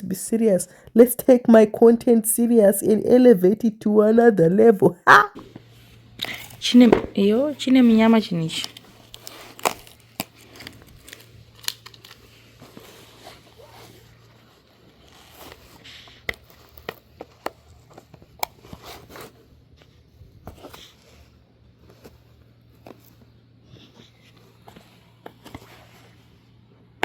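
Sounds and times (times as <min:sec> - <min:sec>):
box and packaging being opened: 0:05.4 - 0:21.3.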